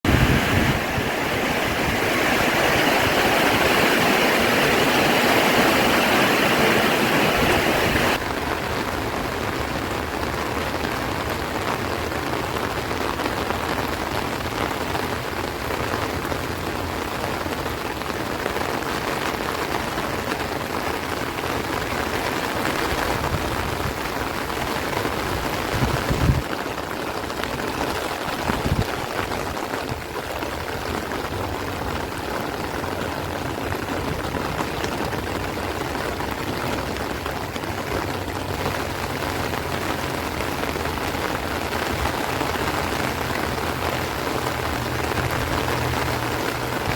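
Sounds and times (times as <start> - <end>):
heavy rain on plants and trees: 0.0 - 46.9.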